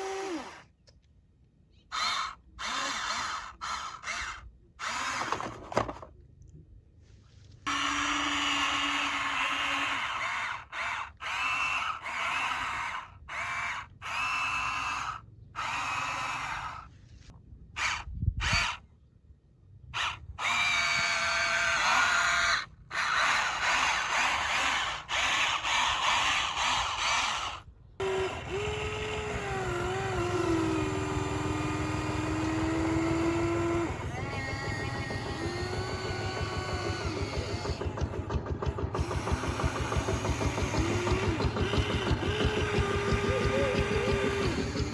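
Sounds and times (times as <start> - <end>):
electric motors whining: 0.0 - 0.7, 1.9 - 6.0, 7.7 - 16.9, 20.0 - 44.9.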